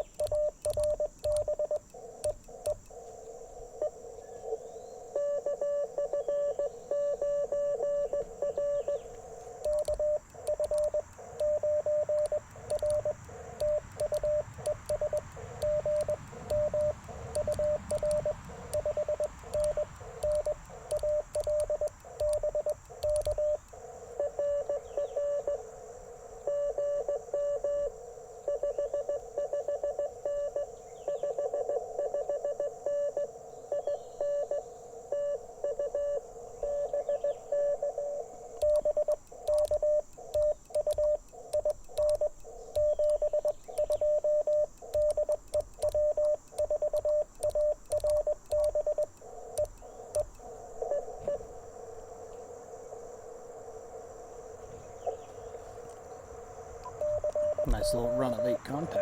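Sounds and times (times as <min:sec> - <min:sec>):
morse code tones: 0:00.0 - 0:02.9, 0:05.2 - 0:23.6, 0:37.5 - 0:50.3, 0:56.8 - 0:59.0
morse paddle clicks: 0:00.0 - 0:03.2, 0:09.4 - 0:23.8, 0:38.6 - 0:50.4
receiver hiss: 0:00.0 - 0:30.6, 0:34.2 - 0:59.0.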